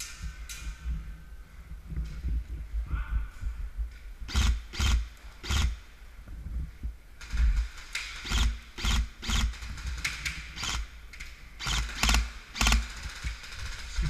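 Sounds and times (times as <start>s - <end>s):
airsoft gun shots: 11.6s - 13.3s.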